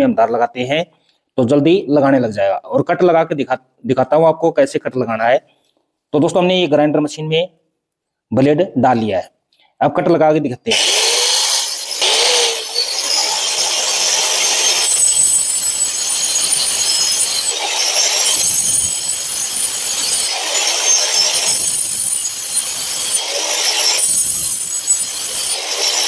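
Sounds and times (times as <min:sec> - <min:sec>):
angle grinder cutting stone: 0:10.7 - 0:26.0.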